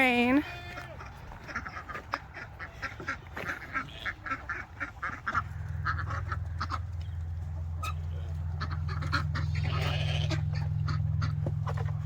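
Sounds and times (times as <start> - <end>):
steady low hum: 0.0 - 12.0
fowl calling: 0.4 - 11.6.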